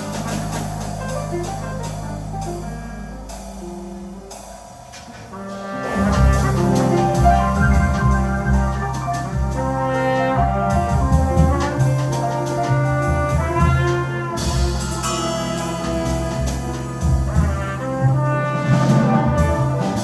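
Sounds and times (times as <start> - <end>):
double bass: 0.0 - 20.0
drum kit with ride cymbal: 0.0 - 20.0
piano: 0.0 - 20.0
trumpet: 5.3 - 20.0.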